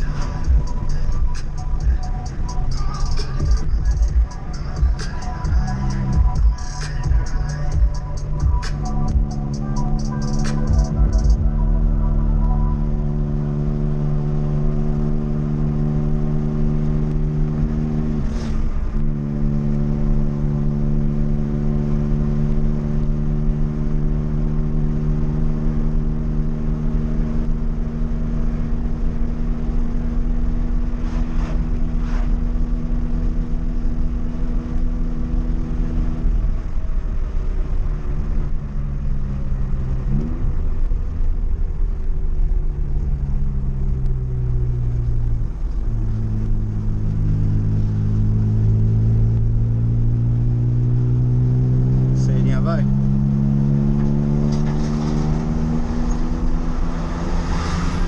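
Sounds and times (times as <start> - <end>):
car engine running while driving: 0.0 - 58.0.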